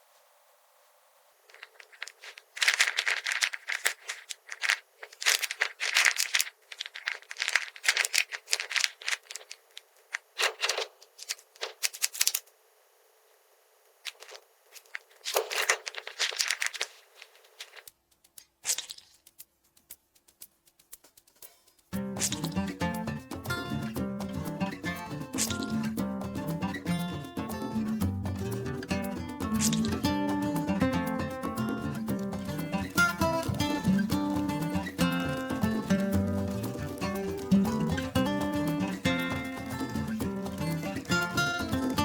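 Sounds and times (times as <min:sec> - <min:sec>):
plastic toy pieces clicking: 0:01.5 - 0:12.4, 0:14.1 - 0:23.1, 0:24.4 - 0:27.5, 0:29.0 - 0:42.0
packaging rustling: 0:01.5 - 0:12.5, 0:14.0 - 0:19.4, 0:25.4 - 0:25.9, 0:32.2 - 0:42.0.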